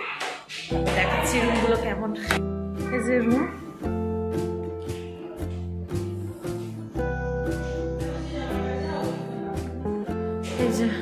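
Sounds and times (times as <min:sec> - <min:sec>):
plucked guitar and bass music: 0:00.7 - 0:11.0.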